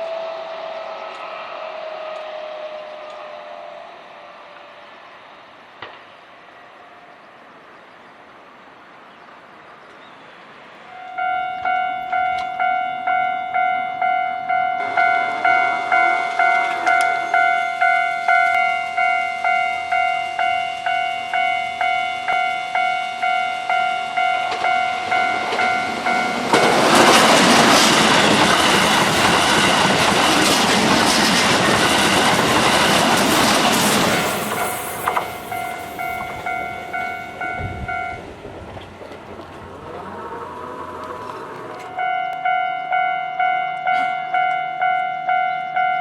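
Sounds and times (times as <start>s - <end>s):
electric train passing: 0.0s - 46.0s
level-crossing warning bell: 10.9s - 46.0s.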